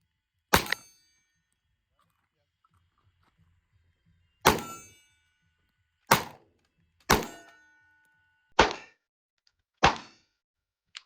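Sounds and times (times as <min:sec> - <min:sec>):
gunshots: 0:04.4 - 0:04.8, 0:06.1 - 0:06.4, 0:07.1 - 0:07.5, 0:09.8 - 0:10.2.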